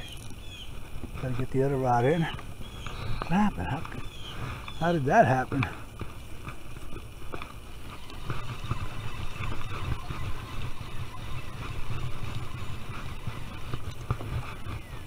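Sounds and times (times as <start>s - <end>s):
wind buffeting microphone: 5.5s - 15.0s.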